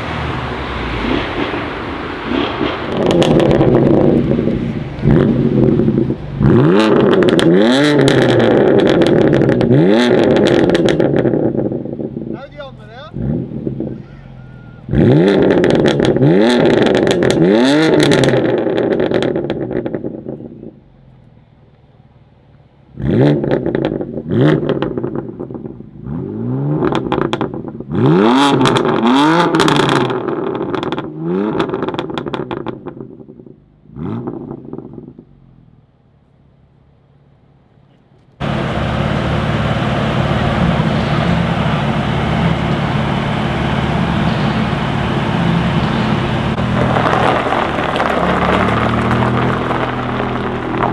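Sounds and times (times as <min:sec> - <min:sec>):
car engine revving: 0:00.0 - 0:20.8, 0:22.9 - 0:33.0, 0:38.4 - 0:50.9
exhaust crackles: 0:00.0 - 0:21.4, 0:38.4 - 0:50.9.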